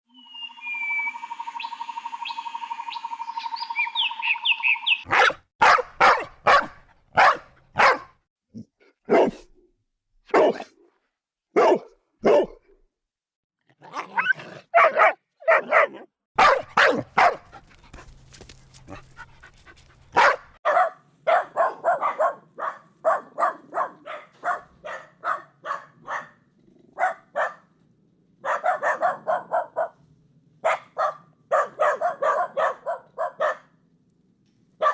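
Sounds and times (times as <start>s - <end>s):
chirping glides: 0.1s - 5.1s
dogs barking: 5.0s - 8.2s, 9.1s - 9.5s, 10.3s - 10.7s, 11.6s - 12.6s, 14.2s - 27.7s, 28.4s - 30.0s, 30.6s - 33.8s.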